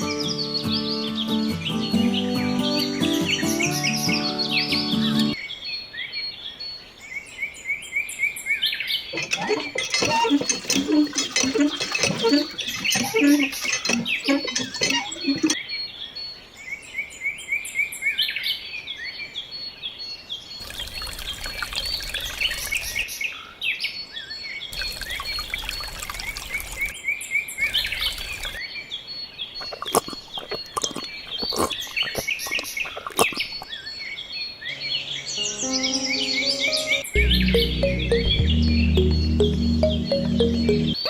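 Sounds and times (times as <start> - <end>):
birds chirping: 0.0 - 16.2, 24.8 - 41.0.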